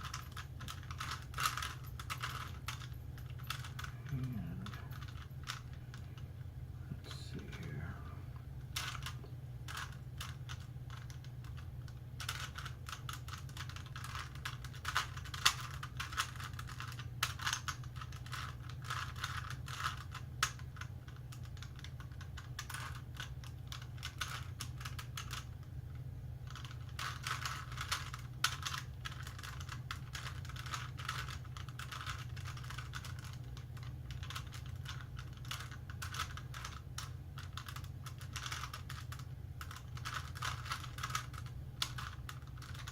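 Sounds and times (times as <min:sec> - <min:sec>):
steady low hum: 0:00.0 - 0:42.9
puzzle cube layers clicking: 0:26.5 - 0:42.9.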